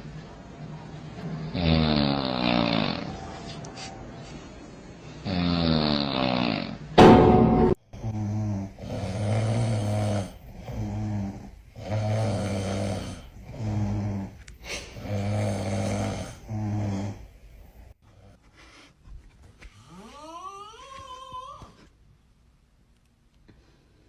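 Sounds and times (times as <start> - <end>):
loud rhythmic snoring: 1.4 - 3.2, 5.2 - 6.8, 8.2 - 14.4, 15.0 - 17.4.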